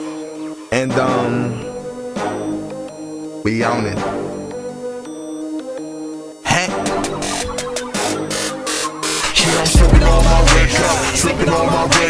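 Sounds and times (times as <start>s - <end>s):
synthesizer chords: 0.0s - 12.0s
held synth bass: 6.8s - 12.0s.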